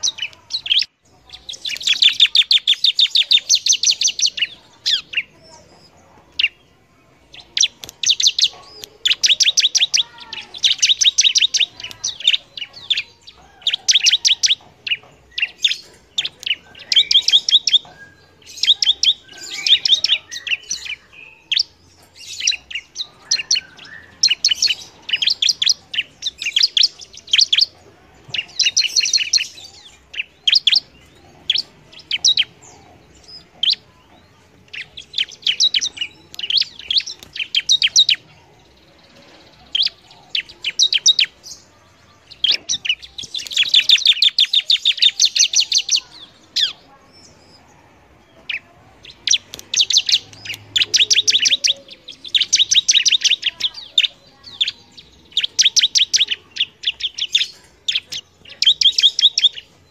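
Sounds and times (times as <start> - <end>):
bird singing high sharp chirps: 0.0 - 59.9.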